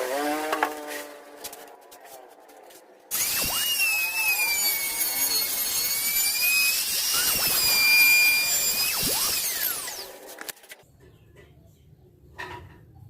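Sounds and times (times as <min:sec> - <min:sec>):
power tool high-pitched whine: 0:03.1 - 0:10.4.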